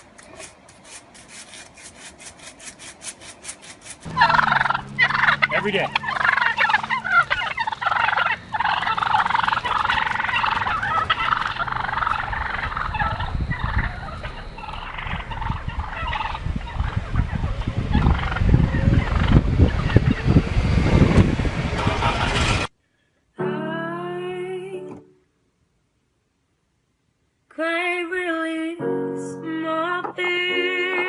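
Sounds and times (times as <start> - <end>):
animal gobble-like calls: 4.1 - 20.2
low rumbling thumps: 4.1 - 22.7.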